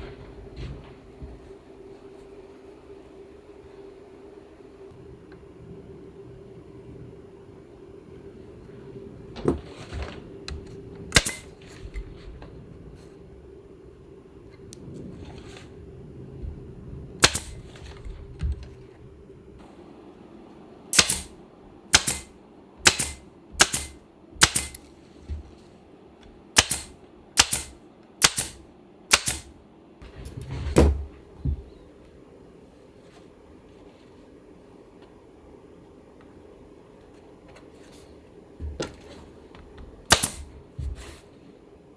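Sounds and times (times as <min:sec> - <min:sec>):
pneumatic staple gun firing: 0:11.2 - 0:11.5, 0:17.2 - 0:17.6, 0:21.0 - 0:21.3, 0:22.0 - 0:22.3, 0:22.9 - 0:24.8, 0:26.6 - 0:29.5, 0:40.1 - 0:40.4.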